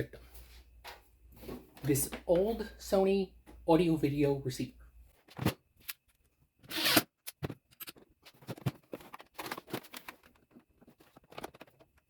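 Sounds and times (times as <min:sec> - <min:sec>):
handling knocks and clicks: 0:07.3 - 0:12.0.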